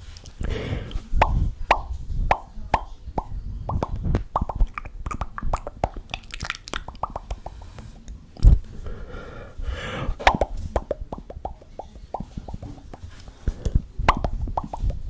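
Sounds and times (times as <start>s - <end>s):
breathy hissing: 0.4s - 1.1s, 8.7s - 10.3s
tongue clicks and lip pops: 0.4s - 8.6s, 10.2s - 15.0s.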